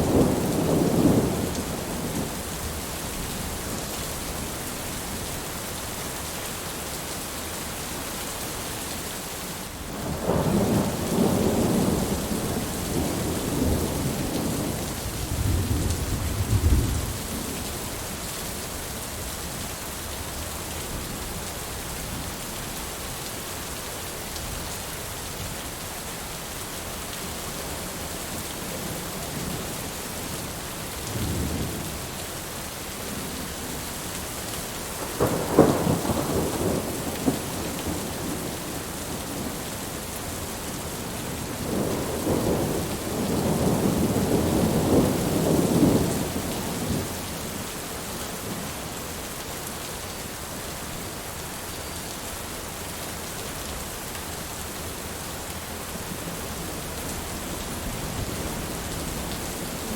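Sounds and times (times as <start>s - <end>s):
thunder rumbling: 0.0s - 2.4s, 10.0s - 17.3s, 35.0s - 39.6s, 41.3s - 47.1s
steady rain: 0.0s - 59.9s.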